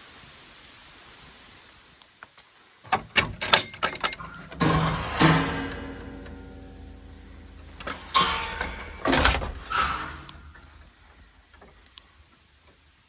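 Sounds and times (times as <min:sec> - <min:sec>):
door creaking: 0:02.9 - 0:11.9.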